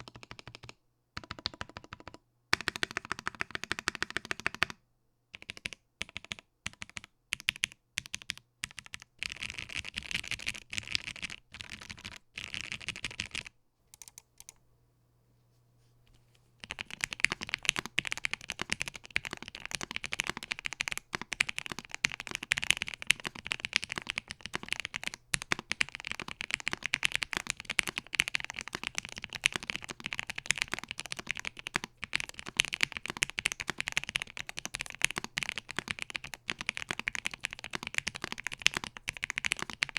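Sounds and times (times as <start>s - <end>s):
typing on mechanical keyboard: 0.0s - 4.8s, 5.4s - 14.6s, 16.6s - 39.9s.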